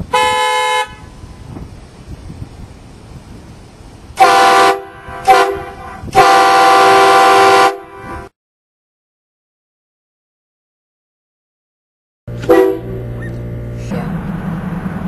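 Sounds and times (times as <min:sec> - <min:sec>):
train horn blasts: 0:00.1 - 0:01.2, 0:04.2 - 0:08.3, 0:12.3 - 0:13.1.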